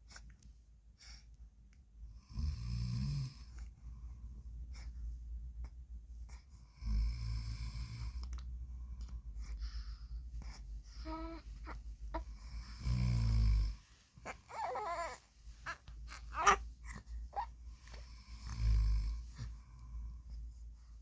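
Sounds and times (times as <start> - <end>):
man snoring: 2.3 - 3.4, 12.7 - 13.8, 18.5 - 19.2
baby cooing and squealing: 14.3 - 16.6.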